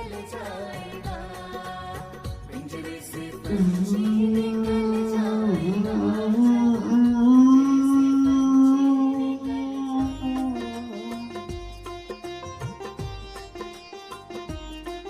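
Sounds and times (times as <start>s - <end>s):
instrumental accompaniment: 0.0s - 15.0s
person singing long note: 3.5s - 11.4s.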